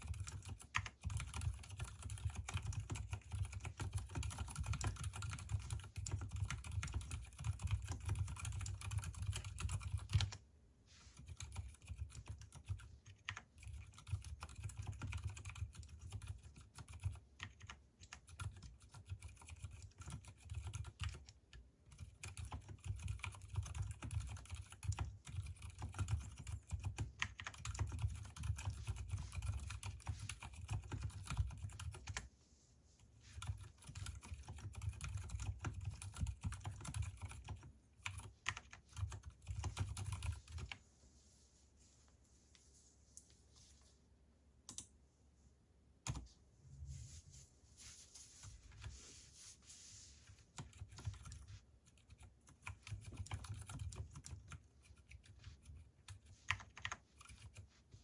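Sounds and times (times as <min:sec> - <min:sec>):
fast typing on mechanical keyboard: 0:00.0 - 0:10.4, 0:11.2 - 0:32.3, 0:33.4 - 0:40.8, 0:50.6 - 0:57.7.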